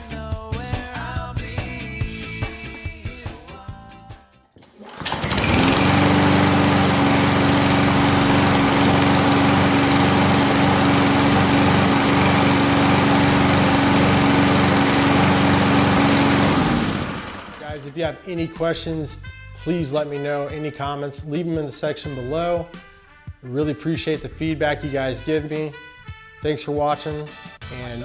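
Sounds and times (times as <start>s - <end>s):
lawn mower engine running: 4.6s - 18.0s.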